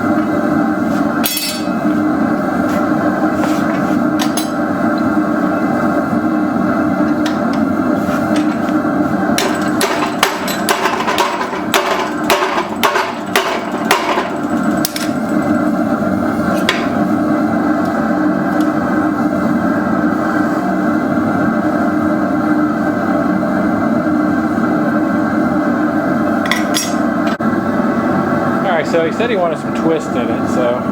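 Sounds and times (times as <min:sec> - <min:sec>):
hammer striking steel on anvil: 0:01.2 - 0:01.8, 0:09.4 - 0:15.1.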